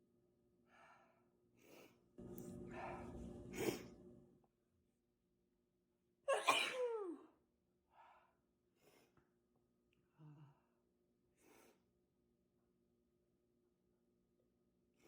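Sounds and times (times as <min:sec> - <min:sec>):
soft breaths: 0:00.7 - 0:04.1
woman sneezing: 0:06.3 - 0:07.2.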